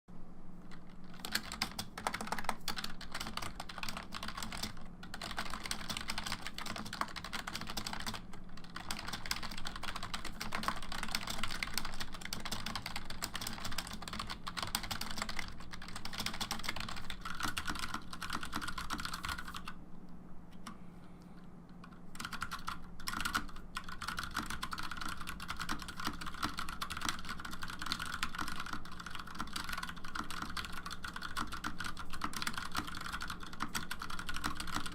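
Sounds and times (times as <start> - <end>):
steady low hum: 0.1 - 34.9
fast typing on keyboard: 0.7 - 19.8, 22.1 - 34.9.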